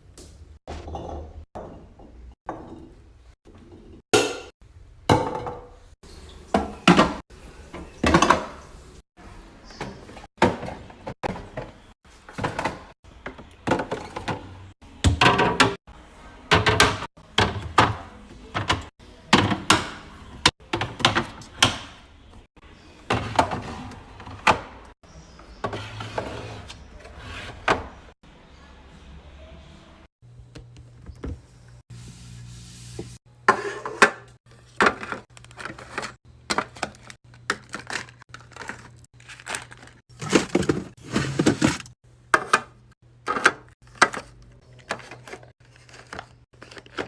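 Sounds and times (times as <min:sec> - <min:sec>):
plastic containers knocking and rustling: 0:09.7 - 0:15.8, 0:16.5 - 0:21.8, 0:33.4 - 0:47.0.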